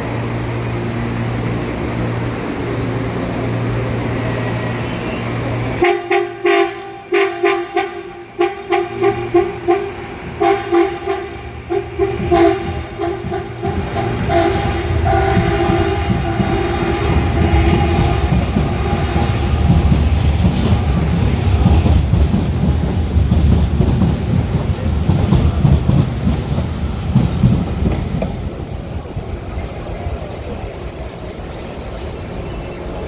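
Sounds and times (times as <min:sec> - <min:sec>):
low train rumble: 0:00.0 - 0:33.0
train horn blasts: 0:05.8 - 0:19.5.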